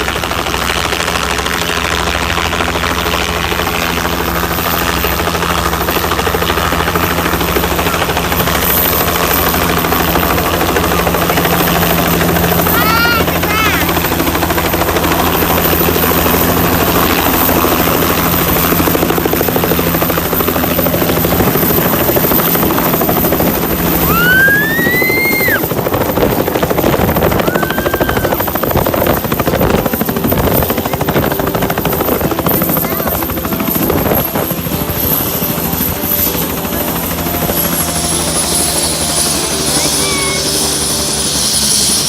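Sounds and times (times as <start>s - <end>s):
helicopter rotor and engine: 0.0s - 42.0s
high turbine whine: 0.0s - 42.0s
brief high squeal: 39.3s - 42.0s.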